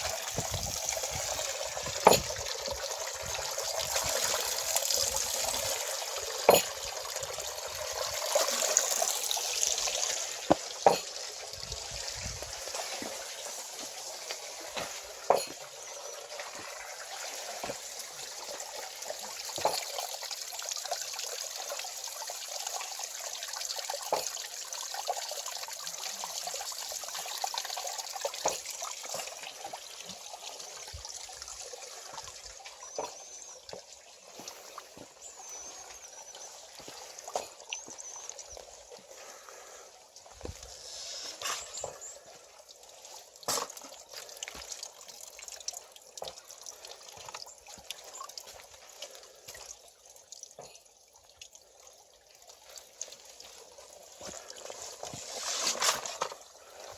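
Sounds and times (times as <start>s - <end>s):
water rushing and splashing: 0.0s - 49.8s
water wheel clicks: 1.8s - 2.7s.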